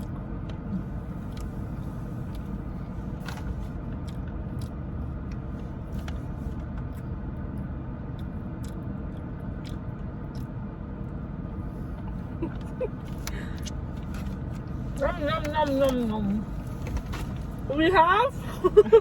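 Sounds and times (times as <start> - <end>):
car interior rumble: 0.0 - 19.0
snacks crunching: 4.0 - 11.2.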